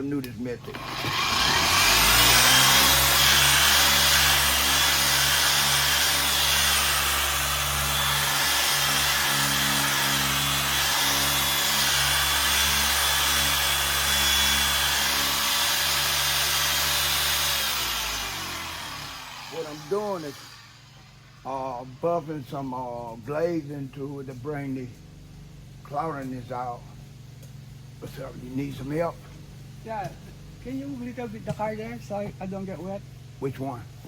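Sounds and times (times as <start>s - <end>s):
polisher running: 0.6s - 21.5s.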